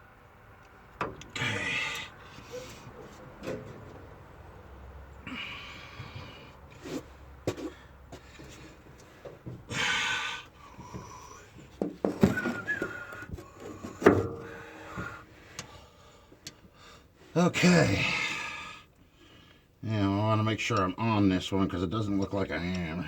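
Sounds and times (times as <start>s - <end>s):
breathy exhale: 5.2s - 6.6s, 9.7s - 11.5s, 14.4s - 17.1s.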